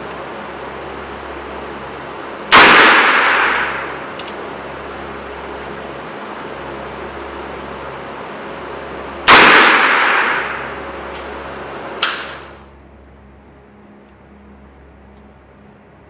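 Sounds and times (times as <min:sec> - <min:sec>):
revolver gunshots: 0:02.5 - 0:04.1, 0:09.2 - 0:10.8.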